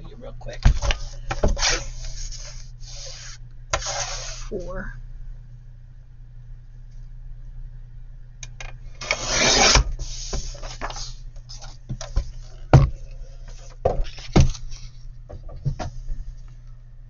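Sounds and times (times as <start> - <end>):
paper scraping rub: 0.9 - 4.6, 9.0 - 11.8.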